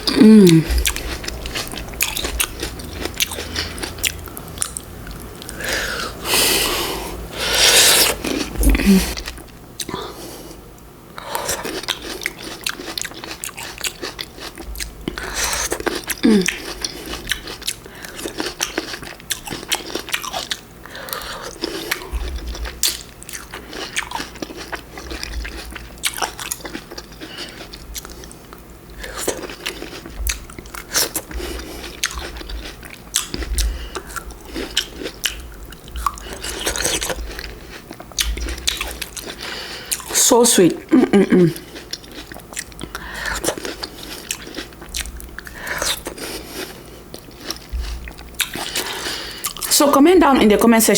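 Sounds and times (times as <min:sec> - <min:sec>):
fruit being bitten and chewed: 0:00.0 - 0:06.5, 0:07.4 - 0:10.2, 0:11.2 - 0:40.2, 0:41.3 - 0:49.7.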